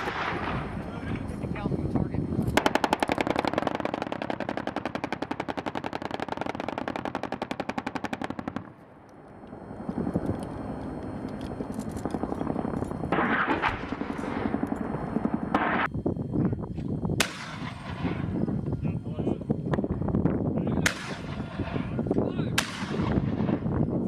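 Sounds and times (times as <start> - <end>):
rumbling: 0.0 - 24.0
automatic gunfire: 2.6 - 8.6
sharp gunshot reports: 13.1 - 14.6, 15.3 - 15.9, 17.2 - 18.4, 20.8 - 23.7.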